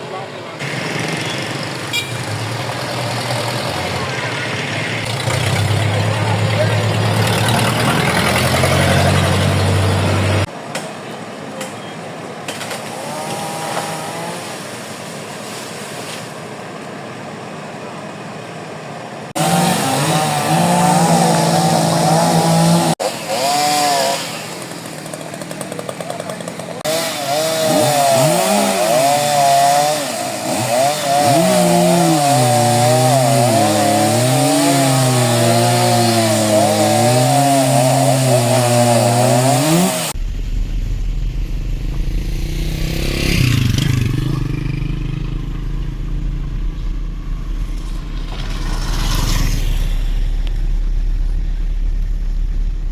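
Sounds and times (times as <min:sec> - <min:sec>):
chainsaw running: 0:00.6 - 0:04.1, 0:05.0 - 0:10.5, 0:12.8 - 0:14.8, 0:19.4 - 0:40.2, 0:41.8 - 0:51.4.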